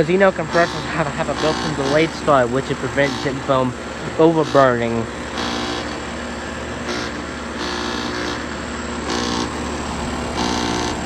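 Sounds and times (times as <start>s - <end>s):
air conditioner electrical hum: 0.0s - 11.0s
harsh rasping noise: 0.0s - 11.0s.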